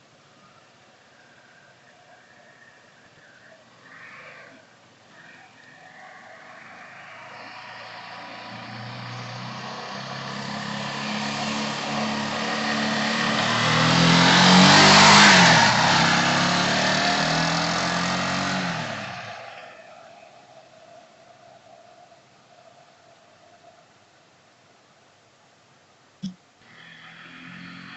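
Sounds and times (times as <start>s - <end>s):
motorcycle passing by: 6.4s - 19.8s, 26.6s - 27.9s.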